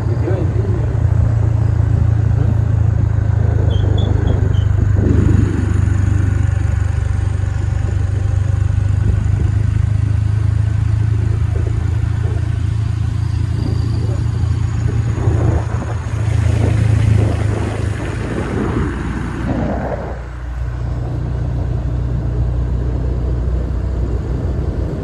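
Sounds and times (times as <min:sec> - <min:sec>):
vehicle engine and road noise: 0:00.0 - 0:25.0.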